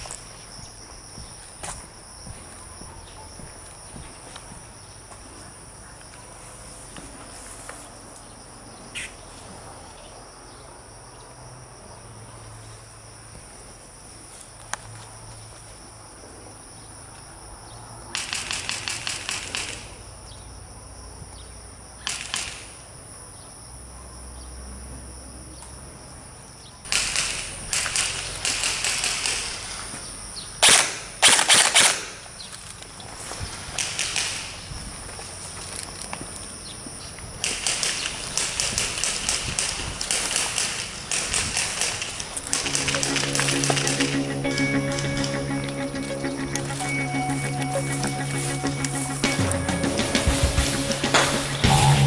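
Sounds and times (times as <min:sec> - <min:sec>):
airsoft guns firing in bursts: 0:18.1 - 0:20.0, 0:22.0 - 0:22.8, 0:26.9 - 0:29.9, 0:30.6 - 0:32.2, 0:33.7 - 0:34.7, 0:37.4 - 0:44.0.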